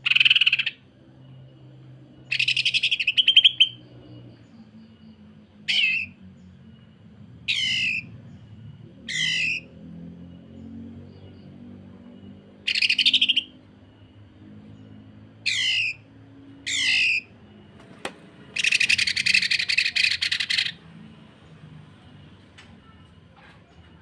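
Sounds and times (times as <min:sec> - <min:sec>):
bird rattling song: 0:12.7 - 0:13.5, 0:17.8 - 0:20.8.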